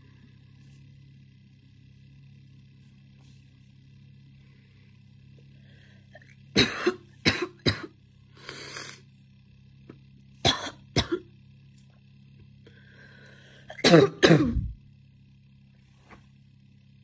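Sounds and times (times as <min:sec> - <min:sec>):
person barking cough: 0:06.6 - 0:07.9, 0:10.5 - 0:11.3, 0:13.7 - 0:14.8.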